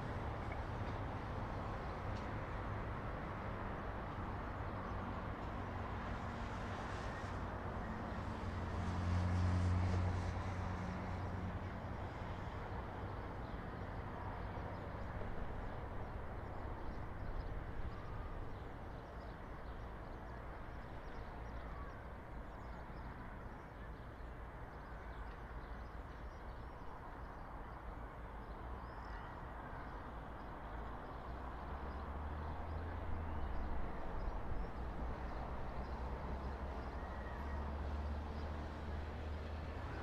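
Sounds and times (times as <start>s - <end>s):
distant traffic rumble: 0.0s - 40.0s.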